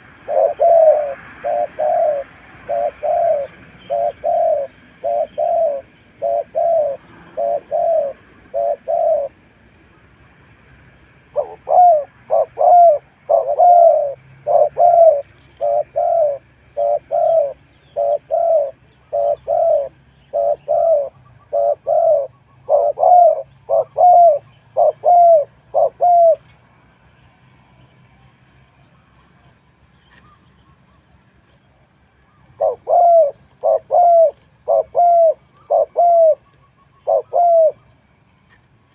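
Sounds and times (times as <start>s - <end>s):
dove cooing: 0.0s - 9.4s, 11.3s - 26.5s, 32.2s - 38.0s.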